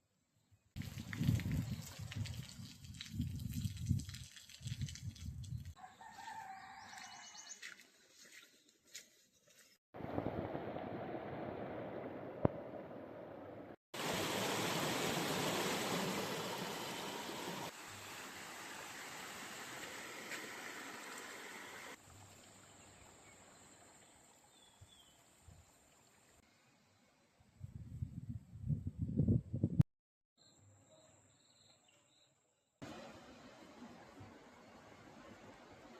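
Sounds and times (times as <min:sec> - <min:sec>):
running water: 0:14.0 - 0:24.4.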